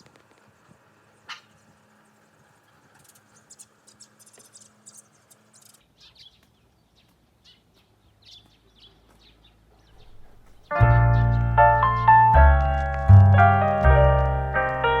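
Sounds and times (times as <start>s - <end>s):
faint bird chirps: 2.9s - 12.2s.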